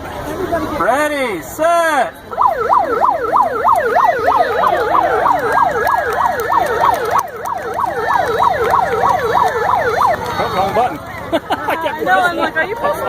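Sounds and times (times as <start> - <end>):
electronic yelp siren: 2.3 - 10.8.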